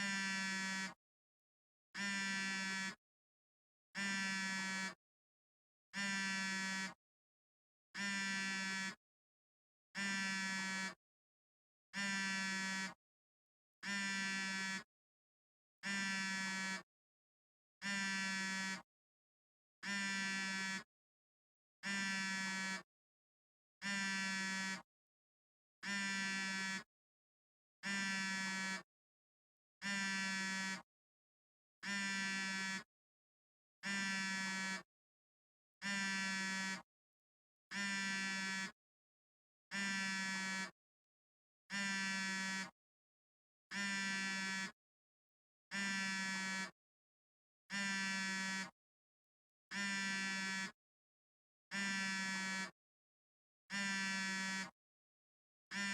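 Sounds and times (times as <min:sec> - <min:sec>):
smartphone vibrating: 0:00.0 - 0:01.0, 0:02.0 - 0:03.0, 0:04.0 - 0:05.0, 0:06.0 - 0:07.0, 0:08.0 - 0:09.0, 0:10.0 - 0:11.0, 0:12.0 - 0:13.0, 0:13.8 - 0:14.8, 0:15.8 - 0:16.8, 0:17.8 - 0:18.8, 0:19.8 - 0:20.8, 0:21.8 - 0:22.8, 0:23.8 - 0:24.8, 0:25.8 - 0:26.8, 0:27.8 - 0:28.8, 0:29.8 - 0:30.8, 0:31.8 - 0:32.8, 0:33.8 - 0:34.8, 0:35.8 - 0:36.8, 0:37.7 - 0:38.7, 0:39.7 - 0:40.7, 0:41.7 - 0:42.8, 0:43.7 - 0:44.7, 0:45.7 - 0:46.7, 0:47.7 - 0:48.8, 0:49.7 - 0:50.7, 0:51.7 - 0:52.7, 0:53.7 - 0:54.8.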